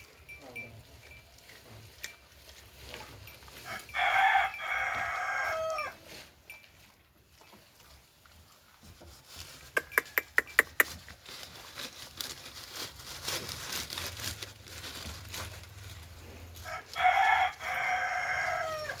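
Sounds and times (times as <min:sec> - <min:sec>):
rooster crowing: 0:03.6 - 0:06.0, 0:16.6 - 0:19.0
chickens clucking: 0:09.8 - 0:11.0.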